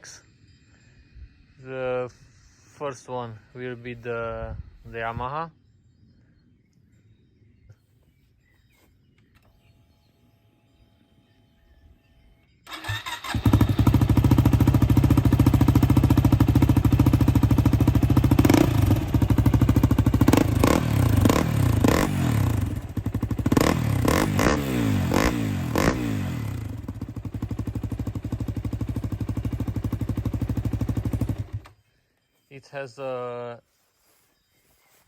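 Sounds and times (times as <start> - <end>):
motorcycle engine idling and revving: 12.7 - 31.8.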